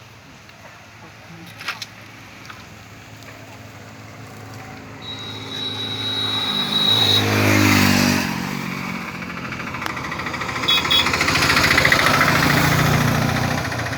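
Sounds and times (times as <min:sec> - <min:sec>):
traffic engines running: 0:00.0 - 0:13.9
engine revving and passing: 0:03.4 - 0:13.9
short high beeps: 0:05.0 - 0:07.8.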